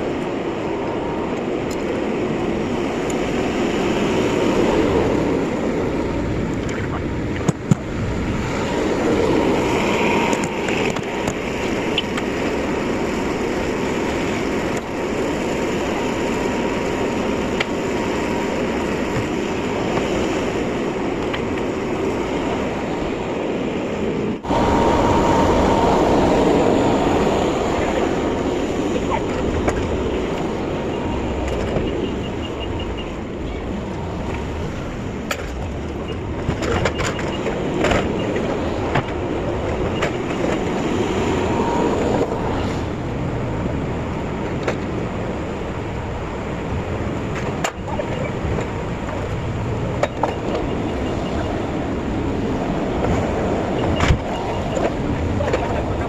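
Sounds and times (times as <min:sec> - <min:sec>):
truck engine and road noise: 0:00.0 - 0:56.0.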